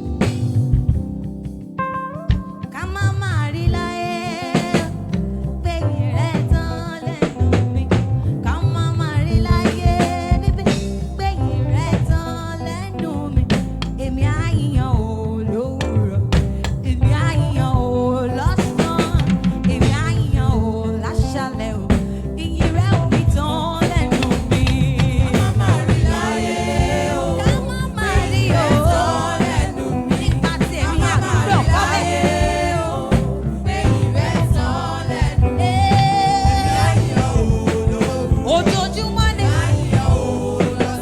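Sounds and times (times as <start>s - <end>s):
drum hits: 0.0s - 1.3s, 22.0s - 41.0s
bass notes: 0.0s - 41.0s
person singing: 2.8s - 13.5s, 22.6s - 41.0s.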